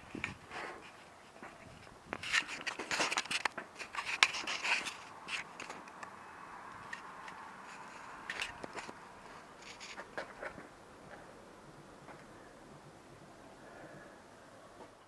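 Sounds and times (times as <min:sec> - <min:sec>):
objects clicking and scraping: 0:00.1 - 0:06.1, 0:06.7 - 0:10.7.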